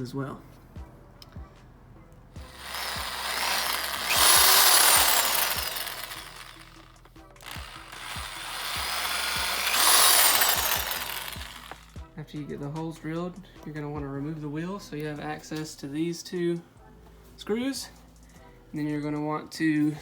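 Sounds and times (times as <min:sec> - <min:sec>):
power drill boring holes: 0:02.4 - 0:12.0.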